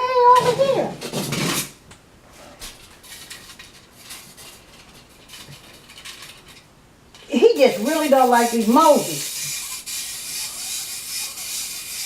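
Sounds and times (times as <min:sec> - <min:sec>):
small objects clicking and rustling: 0:02.8 - 0:07.3.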